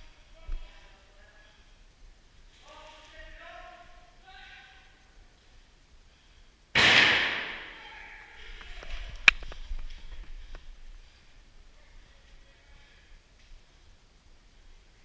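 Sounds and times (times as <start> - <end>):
loud crack: 6.7 - 7.9.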